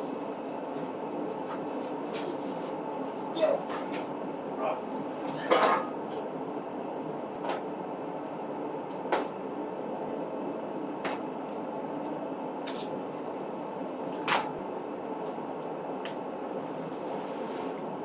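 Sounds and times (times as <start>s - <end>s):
shop heater running: 0.0s - 18.0s.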